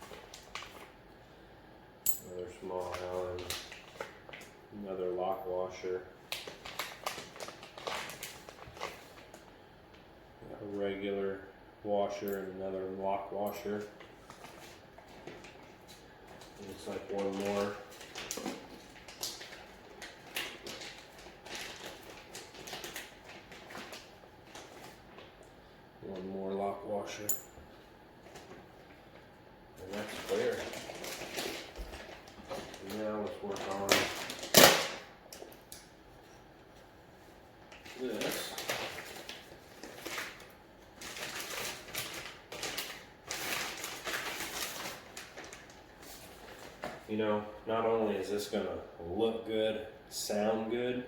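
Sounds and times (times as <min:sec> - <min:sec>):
packaging crinkling and rustling: 0:00.0 - 0:01.0, 0:02.6 - 0:04.6, 0:06.2 - 0:09.6, 0:13.6 - 0:25.5, 0:28.2 - 0:36.3, 0:37.6 - 0:47.1.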